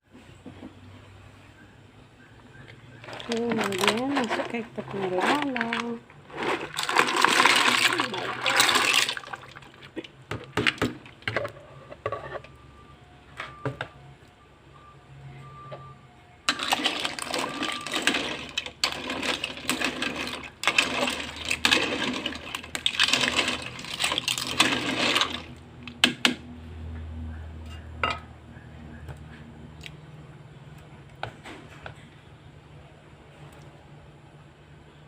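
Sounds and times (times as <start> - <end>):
clam shells clattering: 3.0 - 9.5, 16.5 - 25.6.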